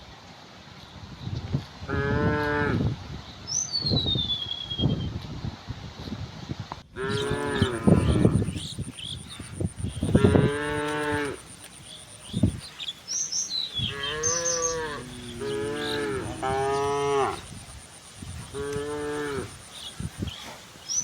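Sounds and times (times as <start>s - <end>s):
cows mooing: 6.9s - 8.6s, 10.0s - 11.6s, 13.7s - 17.7s, 18.4s - 19.6s.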